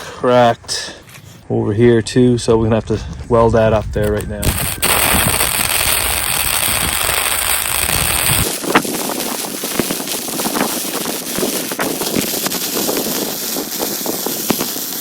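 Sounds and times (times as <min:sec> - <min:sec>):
welding arc crackling: 0:04.0 - 0:15.0.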